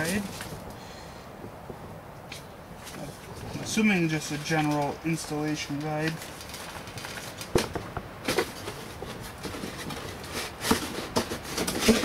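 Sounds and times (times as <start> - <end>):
paper rustling: 2.8 - 12.0.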